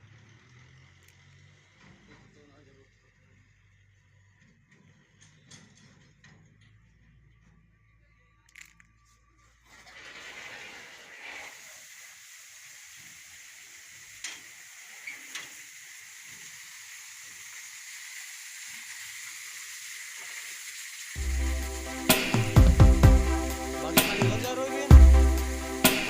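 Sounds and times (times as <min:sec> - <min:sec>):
water rushing from pump outlet: 0:09.7 - 0:26.0
music: 0:21.2 - 0:26.0.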